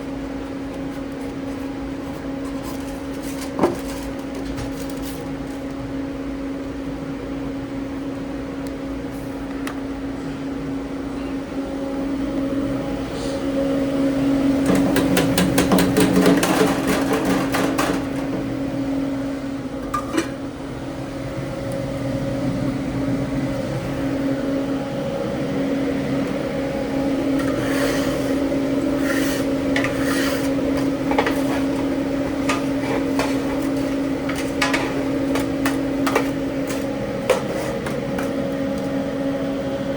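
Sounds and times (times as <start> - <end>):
steady mechanical hum: 0.0 - 39.9
pans and utensils clattering: 2.5 - 5.1, 14.7 - 18.5, 19.8 - 20.4, 29.0 - 38.4.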